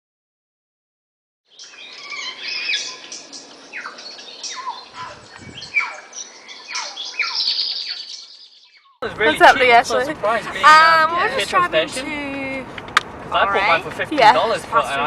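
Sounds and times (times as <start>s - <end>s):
birds chirping: 1.5s - 11.7s.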